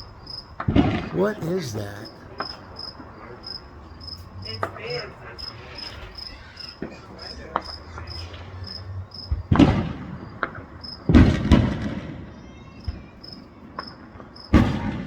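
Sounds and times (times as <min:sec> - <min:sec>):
crickets chirping: 0:00.0 - 0:11.1, 0:13.2 - 0:14.6
fireworks banging: 0:00.9 - 0:02.2.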